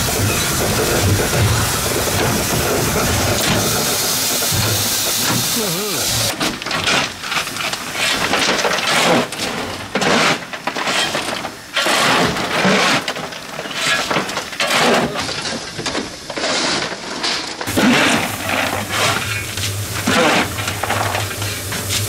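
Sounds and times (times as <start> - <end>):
steam locomotive exhaust beating: 0.0 - 6.3, 17.7 - 22.0.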